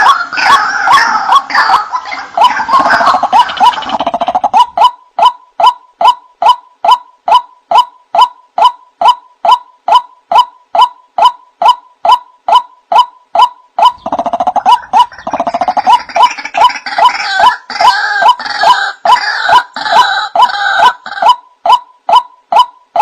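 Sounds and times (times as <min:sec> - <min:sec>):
harsh bird chattering: 0:00.0 - 0:23.0.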